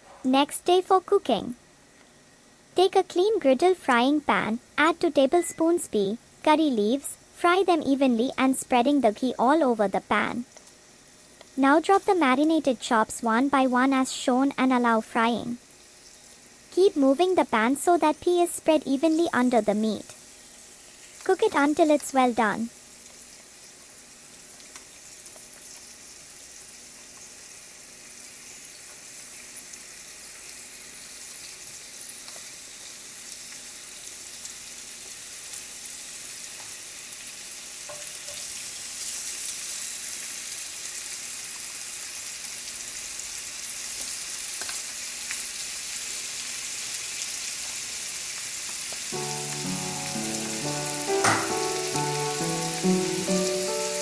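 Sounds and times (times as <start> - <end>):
meat sizzling in a pan: 10.3 - 54.0
tune of sustained notes: 49.2 - 54.0.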